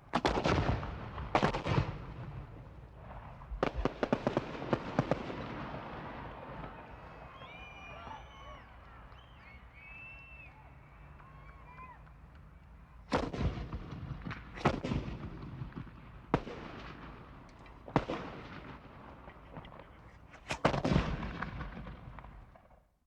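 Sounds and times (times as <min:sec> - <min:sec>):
rolling echo: 0:00.0 - 0:22.8
rifle shots: 0:00.1 - 0:06.9, 0:13.1 - 0:22.6.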